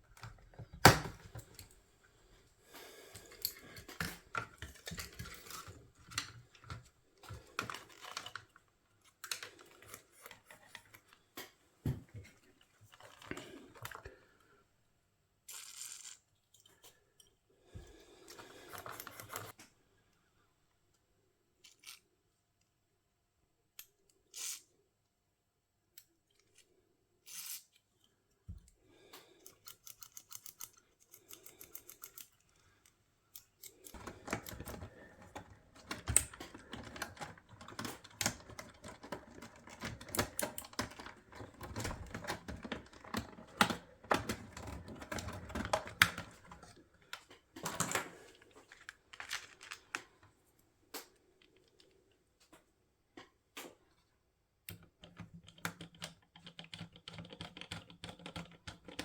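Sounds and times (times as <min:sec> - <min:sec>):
clicking and scraping: 0:02.7 - 0:14.2, 0:15.5 - 0:19.7, 0:26.0 - 0:52.6.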